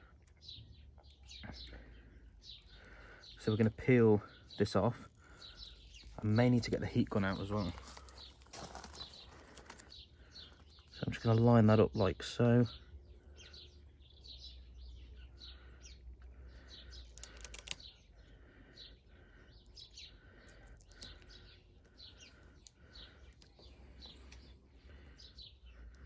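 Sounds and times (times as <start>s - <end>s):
small birds chirping: 0.0s - 26.0s
crackling clicks: 17.1s - 17.9s.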